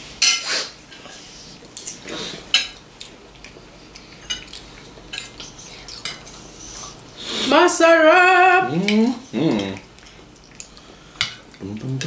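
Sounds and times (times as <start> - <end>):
cutlery clinking on plates: 1.8 - 2.8, 4.1 - 6.3.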